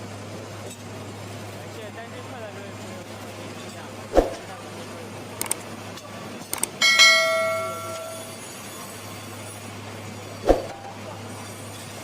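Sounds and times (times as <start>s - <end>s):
light clicks: 5.4s - 5.6s, 6.5s - 6.8s
bell-like metallic ring: 6.8s - 8.7s.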